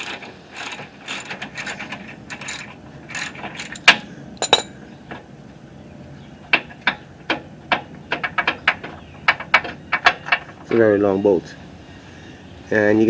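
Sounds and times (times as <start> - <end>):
hand ratchet clicking: 0.0 - 4.7.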